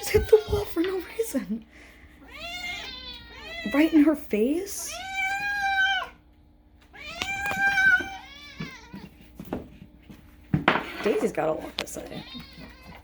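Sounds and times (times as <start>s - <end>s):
cat meowing: 2.2s - 4.0s, 4.8s - 6.2s, 6.9s - 9.1s.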